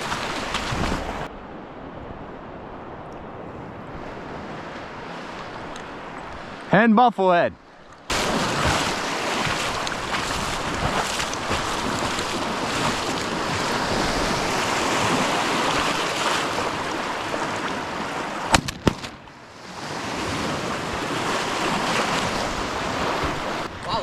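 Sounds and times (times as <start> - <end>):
waves washing against shore: 0.0 - 6.9, 8.1 - 24.0
wind buffeting microphone: 8.1 - 18.2, 19.9 - 24.0.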